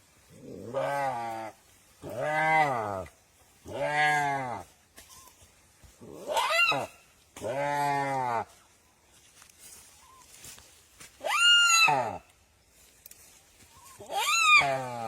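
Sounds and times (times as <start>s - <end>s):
deer bleating: 0.3s - 4.7s, 6.0s - 8.6s, 14.0s - 15.0s.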